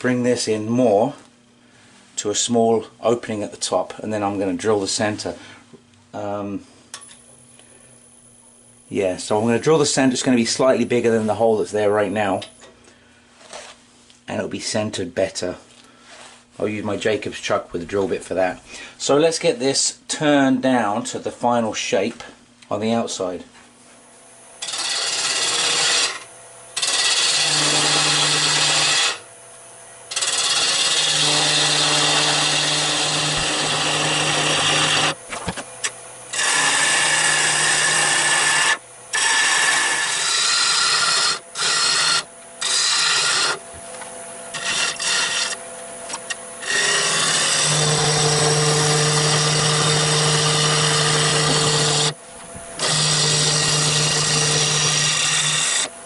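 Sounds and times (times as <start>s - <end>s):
steady low hum: 0.0s - 56.0s
lathe tool scraping wood: 24.6s - 29.3s, 30.1s - 56.0s.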